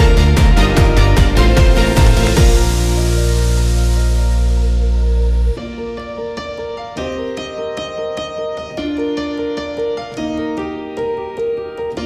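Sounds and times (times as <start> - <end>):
electronic music beat: 0.0 - 6.2
held chord over steady bass: 0.0 - 6.3.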